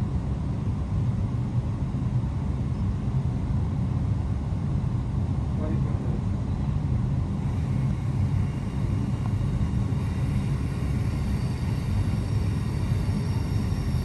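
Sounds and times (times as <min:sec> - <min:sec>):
train rumbling: 0:05.1 - 0:14.0.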